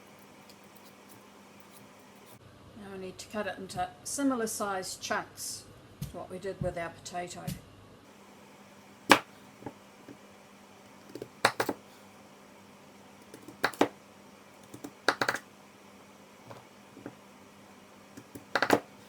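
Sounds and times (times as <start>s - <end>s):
knife hitting chopping board: 18.6s - 18.9s.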